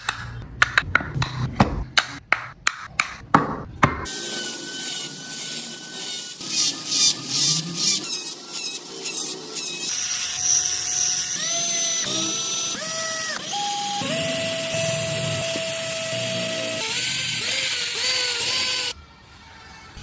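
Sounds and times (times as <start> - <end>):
rotary carving tool running: 4.1 - 19.0.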